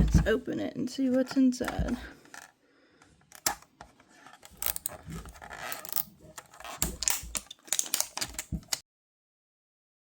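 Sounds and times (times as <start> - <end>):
cardboard and plastic packaging tearing: 4.4 - 8.8.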